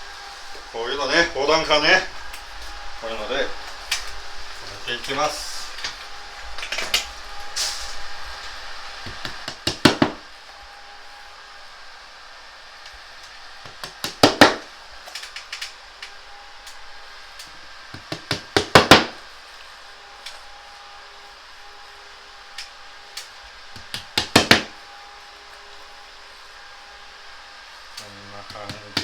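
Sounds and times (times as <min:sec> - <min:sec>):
hammer knocking into plasterboard: 0:09.2 - 0:10.2, 0:13.7 - 0:14.7, 0:18.0 - 0:19.2, 0:23.8 - 0:24.7.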